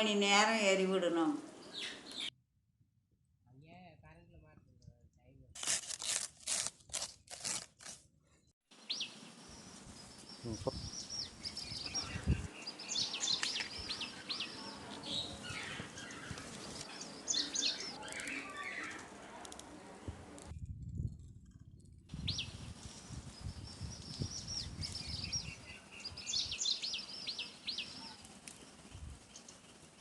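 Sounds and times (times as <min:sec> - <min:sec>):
small birds chirping: 0:01.5 - 0:02.3, 0:08.7 - 0:19.8, 0:22.2 - 0:30.0.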